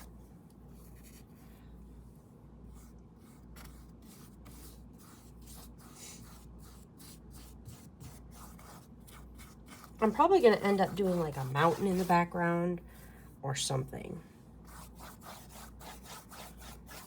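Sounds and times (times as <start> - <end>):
paintbrush stroking on canvas: 2.7 - 13.4, 14.6 - 17.0.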